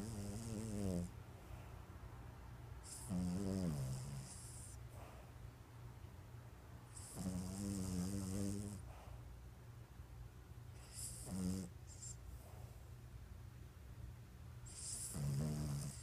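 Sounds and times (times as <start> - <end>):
pet snoring: 0.0 - 1.2, 2.8 - 5.2, 6.9 - 9.1, 10.8 - 12.2, 14.7 - 16.0.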